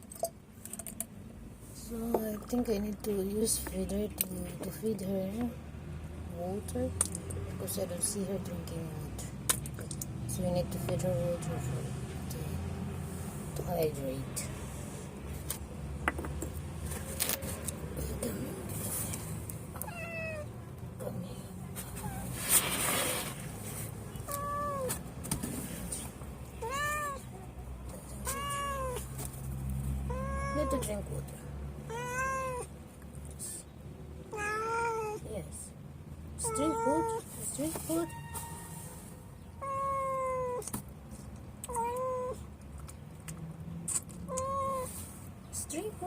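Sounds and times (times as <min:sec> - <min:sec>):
cat meowing: 0:19.8 - 0:20.5, 0:24.2 - 0:24.9, 0:26.6 - 0:27.3, 0:28.2 - 0:29.1, 0:30.0 - 0:30.9, 0:31.9 - 0:32.7, 0:34.3 - 0:35.2, 0:36.4 - 0:37.2, 0:39.6 - 0:40.6, 0:41.7 - 0:42.4, 0:44.3 - 0:45.0.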